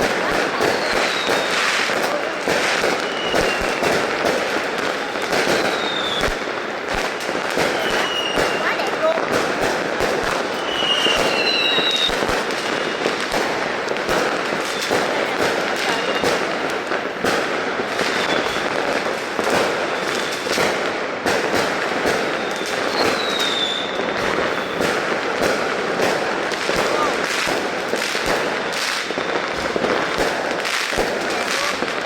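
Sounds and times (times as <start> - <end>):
fireworks crackling and banging: 0.0 - 32.0
high firework whistle: 0.4 - 4.1, 4.8 - 13.5, 17.8 - 27.6.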